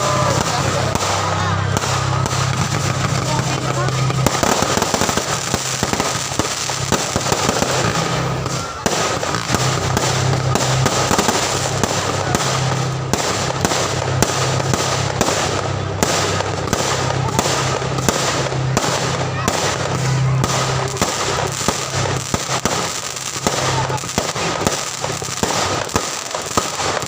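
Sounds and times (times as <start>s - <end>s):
fireworks crackling and popping: 0.0s - 27.0s.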